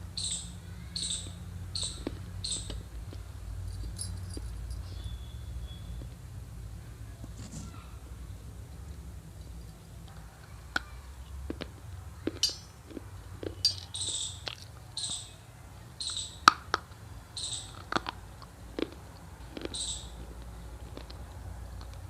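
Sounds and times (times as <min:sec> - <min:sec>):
dry clay being chewed: 0:01.8 - 0:05.1, 0:09.4 - 0:14.9, 0:17.6 - 0:22.0.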